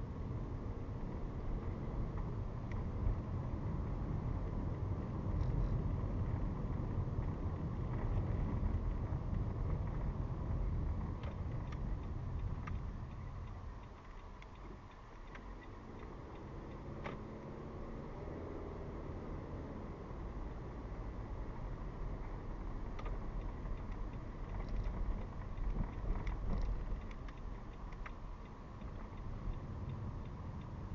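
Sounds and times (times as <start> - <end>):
car engine and tyre rumble: 0.0 - 30.9
faint clicks: 11.2 - 17.2, 23.0 - 30.9.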